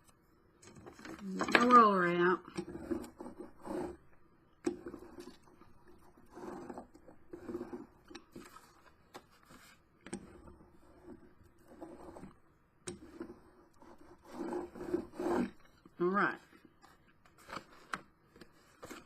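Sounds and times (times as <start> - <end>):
hand roller rubbing on paper: 2.6 - 4.0, 4.8 - 8.8, 13.0 - 16.2.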